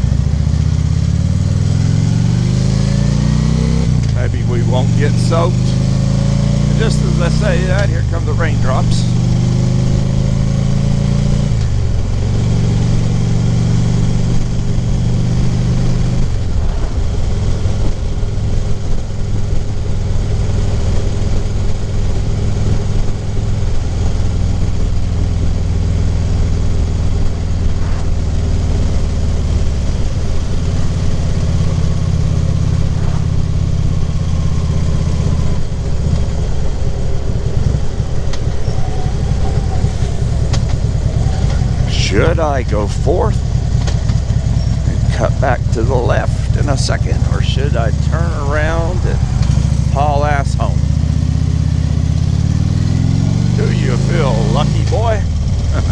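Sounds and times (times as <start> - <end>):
motorcycle engine running: 0.0 - 55.9
wind rushing over microphone: 14.1 - 20.2, 24.2 - 45.8.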